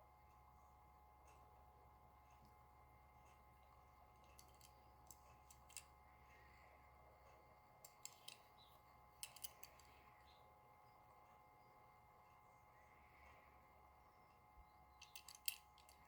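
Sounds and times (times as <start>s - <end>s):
faint steady hum: 0.0s - 16.0s
small sharp clicks: 7.8s - 10.0s, 15.0s - 16.0s.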